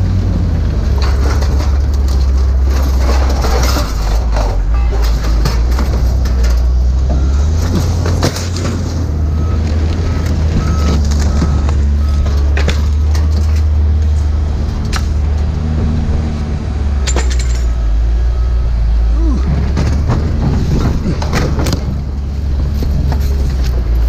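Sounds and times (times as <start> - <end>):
vehicle engine droning: 0.0 - 24.0
sharp clicks and knocks: 9.6 - 14.1, 14.8 - 15.6.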